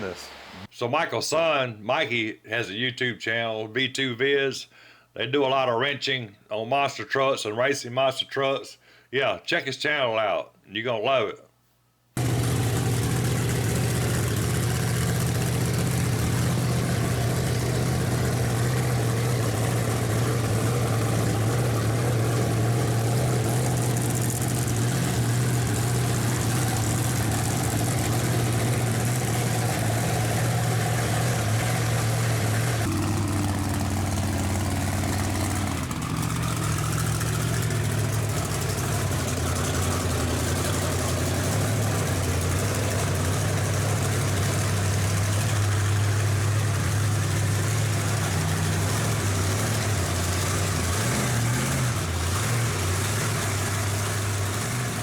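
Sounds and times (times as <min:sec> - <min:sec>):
vehicle engine idling: 0:12.2 - 0:55.0.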